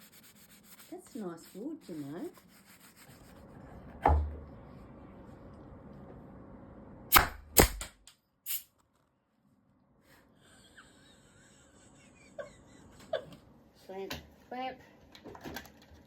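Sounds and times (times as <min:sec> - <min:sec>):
nail gun firing: 0:07.1 - 0:08.0.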